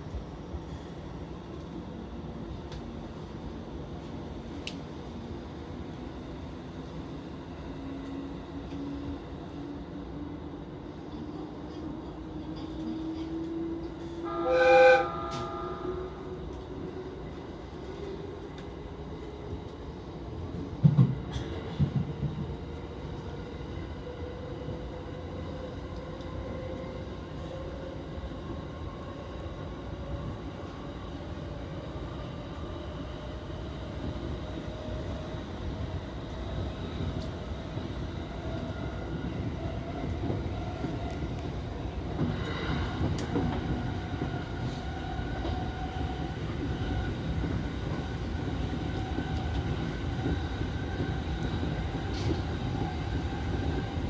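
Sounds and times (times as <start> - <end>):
train motor whine: 14.3 - 16.2.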